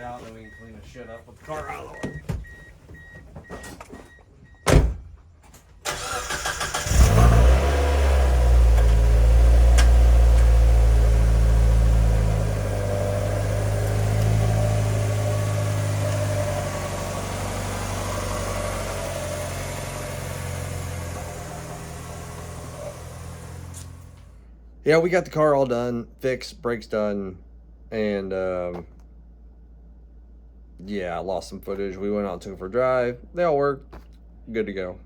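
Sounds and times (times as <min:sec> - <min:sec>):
starter motor cranking: 0:05.9 - 0:07.4
car engine idling: 0:05.9 - 0:24.4.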